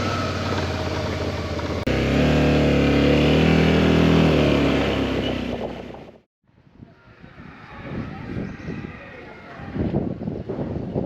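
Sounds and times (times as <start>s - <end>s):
vehicle engine running: 0.0s - 6.2s.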